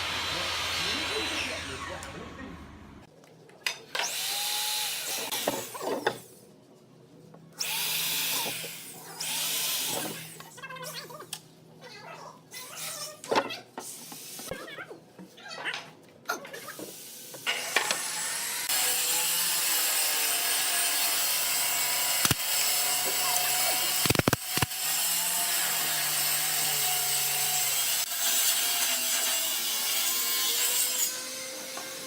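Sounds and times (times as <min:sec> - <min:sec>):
power tool working wood: 0:00.0 - 0:02.5, 0:17.5 - 0:32.0.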